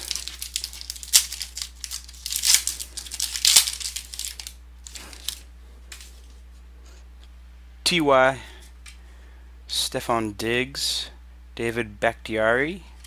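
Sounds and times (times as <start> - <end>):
wrapper tearing and crinkling: 0.0 - 5.4.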